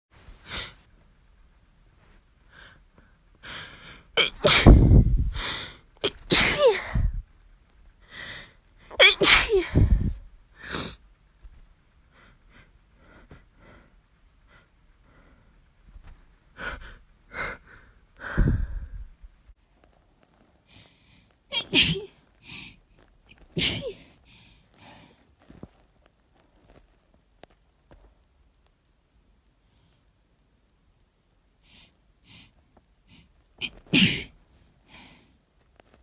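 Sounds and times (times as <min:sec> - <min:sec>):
person sneezing: 0:04.2 - 0:05.0, 0:06.0 - 0:07.2, 0:08.9 - 0:11.0, 0:21.5 - 0:22.2, 0:23.5 - 0:24.1, 0:33.6 - 0:34.4.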